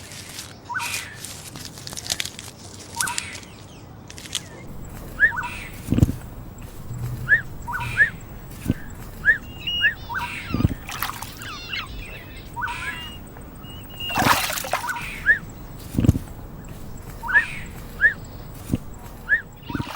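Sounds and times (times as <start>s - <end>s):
animal chirping calls: 4.5s - 19.9s
splash: 8.7s - 16.3s.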